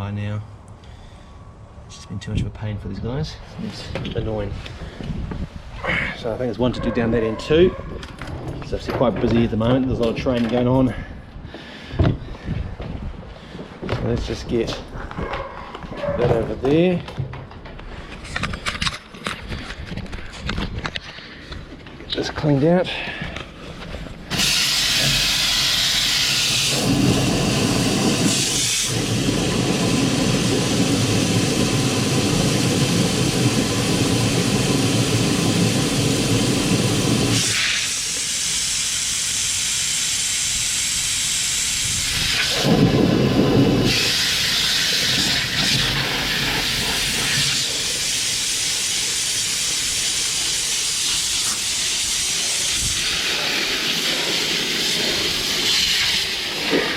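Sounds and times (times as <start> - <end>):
high-pressure water spray hissing: 24.3 - 56.9.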